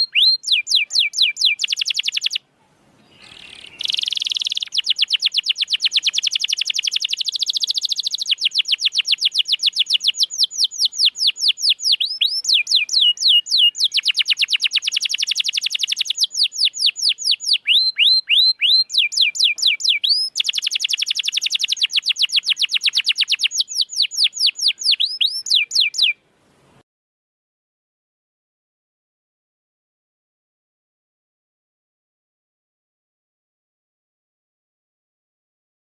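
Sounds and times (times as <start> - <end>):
canary singing trills: 0.0 - 2.4, 3.0 - 26.2.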